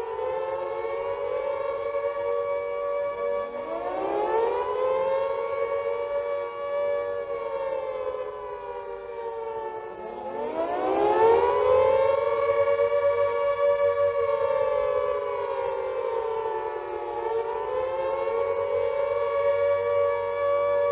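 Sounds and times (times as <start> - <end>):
air raid siren wailing: 0.0 - 20.9.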